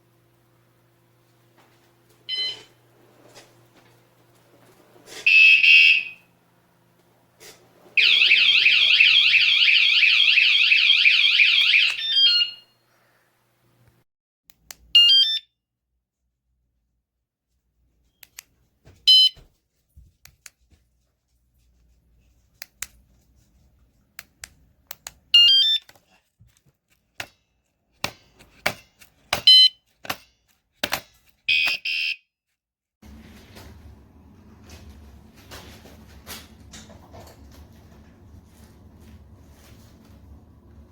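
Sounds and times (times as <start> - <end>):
warbling alarm siren: 5.3 - 6.3, 8.0 - 12.7
high alarm chirps: 8.0 - 12.7.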